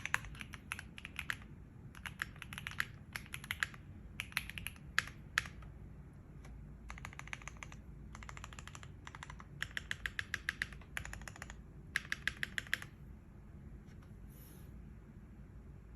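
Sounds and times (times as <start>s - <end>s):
mechanical keyboard typing: 0.0s - 5.7s, 6.4s - 13.0s.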